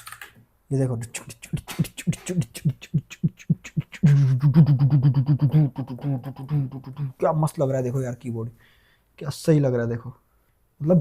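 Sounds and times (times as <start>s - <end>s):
man beatboxing: 0.9s - 7.3s.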